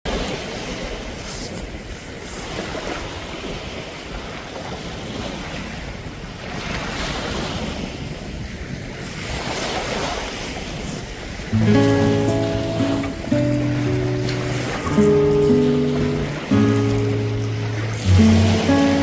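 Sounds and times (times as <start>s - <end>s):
wind buffeting microphone: 0.2s - 19.0s
sea surf washing in: 9.2s - 19.0s.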